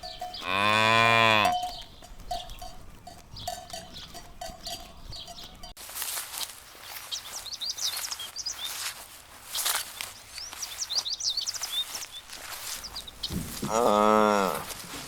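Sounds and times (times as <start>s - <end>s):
small birds chirping: 0.0s - 15.0s
soft rustles and clicks: 4.7s - 13.8s.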